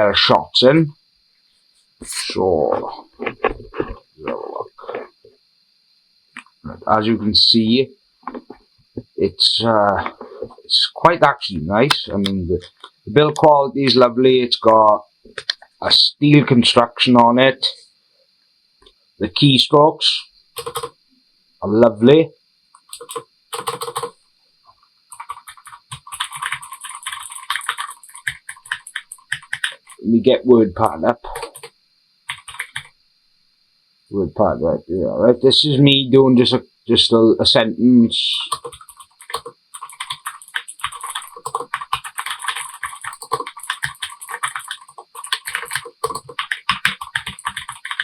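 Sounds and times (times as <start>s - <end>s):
typing on mechanical keyboard: 20.6s - 20.9s, 22.8s - 24.2s, 25.1s - 30.0s, 31.4s - 31.7s, 32.3s - 32.9s, 38.4s - 48.0s.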